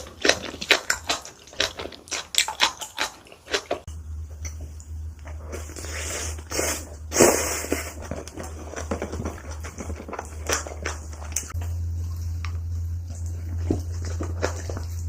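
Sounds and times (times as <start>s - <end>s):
food being bitten and chewed: 0.0s - 15.0s
low hum: 3.7s - 15.0s.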